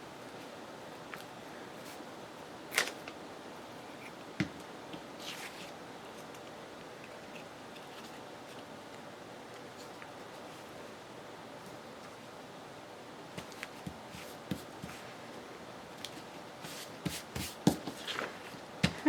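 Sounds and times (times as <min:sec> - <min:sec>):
steady low hiss: 0:00.0 - 0:19.0
paper rustling: 0:02.7 - 0:03.2, 0:05.2 - 0:08.7, 0:16.0 - 0:18.7.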